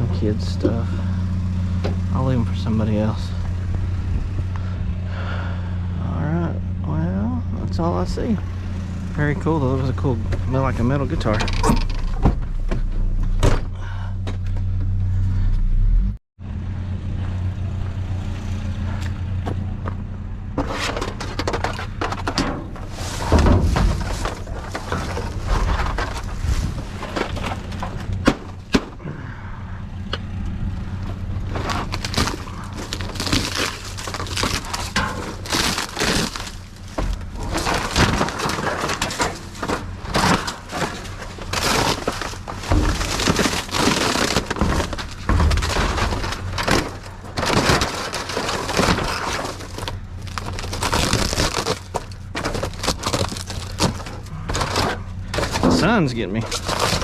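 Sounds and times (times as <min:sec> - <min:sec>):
junk rummaged in dumpster: 0:00.0 - 0:14.8, 0:18.9 - 0:57.0
steady low hum: 0:00.0 - 0:57.0
debris knocking and clattering: 0:20.5 - 0:29.0, 0:31.0 - 0:57.0.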